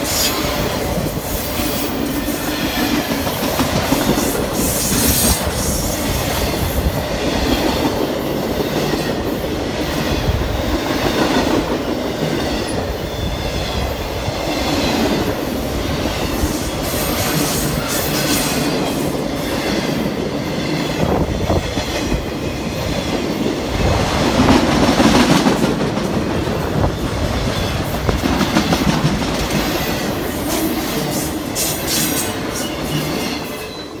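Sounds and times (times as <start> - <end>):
freight train rolling past: 0.0 - 34.0.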